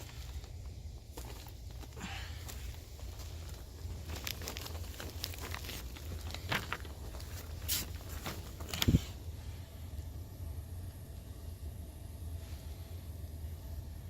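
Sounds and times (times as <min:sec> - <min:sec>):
crinkling and scuffing: 0:00.0 - 0:09.3
steady low hum: 0:00.0 - 0:14.0.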